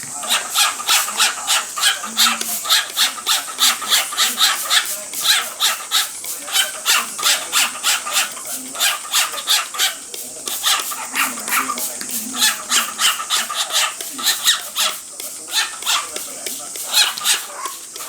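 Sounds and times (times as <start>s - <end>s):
cockatiel chattering calls: 0.0s - 18.0s.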